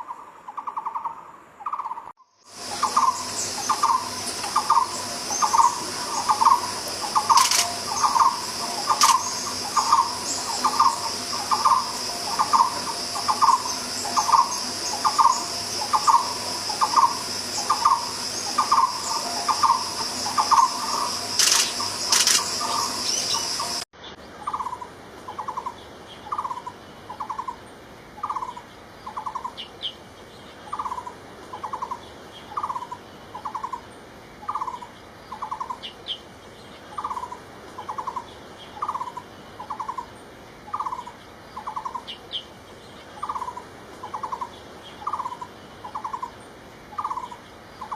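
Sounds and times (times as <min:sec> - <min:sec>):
bird calling with trilled notes: 0:00.0 - 0:23.8
steady high hiss: 0:02.4 - 0:47.9.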